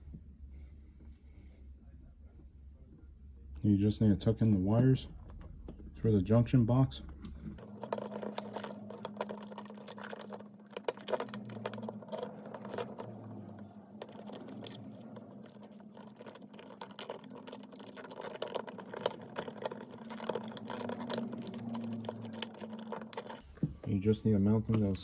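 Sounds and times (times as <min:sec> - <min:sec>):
faint low hum: 0:00.0 - 0:25.0
electrical wires clicking and scraping: 0:03.6 - 0:25.0.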